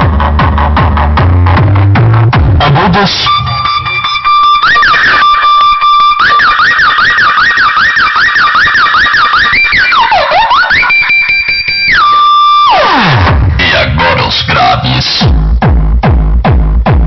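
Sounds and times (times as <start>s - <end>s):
electronic siren tones: 2.7s - 13.7s.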